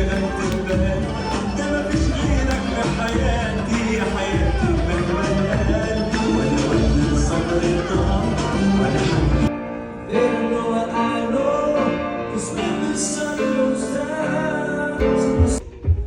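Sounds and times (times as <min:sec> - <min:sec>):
background music with singing: 0:00.0 - 0:16.0.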